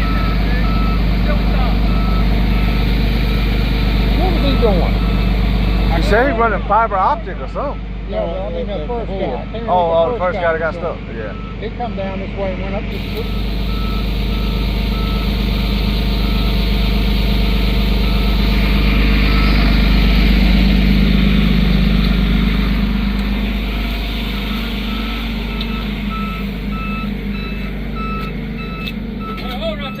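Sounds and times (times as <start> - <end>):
truck reverse alarm beeping: 0.0 - 11.8, 12.9 - 30.0
truck engine running: 0.0 - 30.0
higher-pitched beeper: 3.8 - 7.9, 13.0 - 21.6, 23.5 - 30.0.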